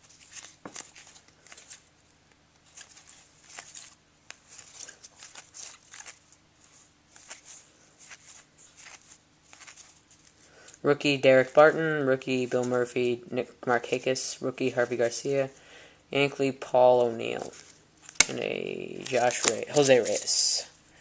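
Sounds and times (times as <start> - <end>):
card pack wrapper rustling: 0.0 - 1.9, 2.6 - 10.4, 17.2 - 20.6
cards shuffled by hand: 0.0 - 1.9, 2.6 - 10.5, 17.0 - 20.7.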